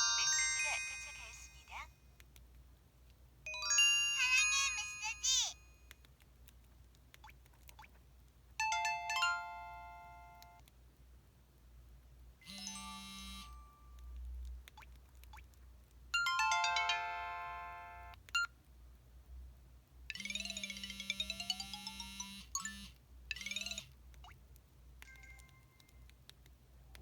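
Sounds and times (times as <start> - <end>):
phone alert-tone chimes: 0.0 - 1.8, 3.5 - 5.4, 12.5 - 13.6, 16.2 - 18.5, 20.2 - 23.9.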